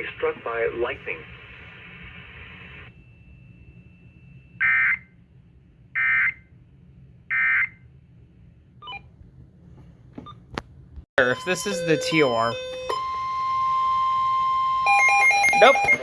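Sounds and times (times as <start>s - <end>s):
broadcast static: 0.0s - 3.0s, 11.2s - 13.6s, 15.0s - 16.0s.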